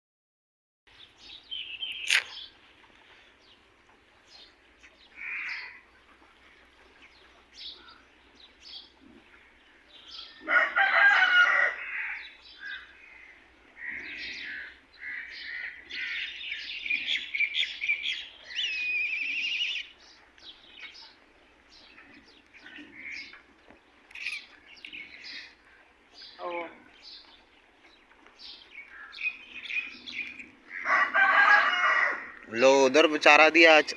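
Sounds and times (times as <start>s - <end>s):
small birds chirping: 0.9s - 10.5s, 11.8s - 31.0s
rooster crowing: 10.5s - 12.2s, 30.8s - 32.4s.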